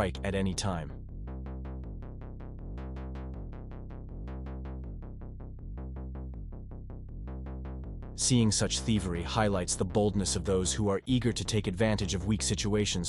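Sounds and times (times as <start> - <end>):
electronic music: 7.1 - 10.6.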